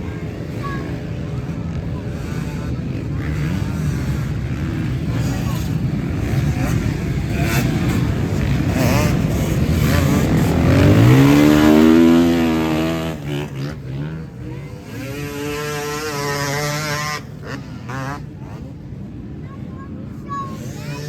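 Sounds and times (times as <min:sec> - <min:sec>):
motorcycle engines revving: 0:00.0 - 0:21.0.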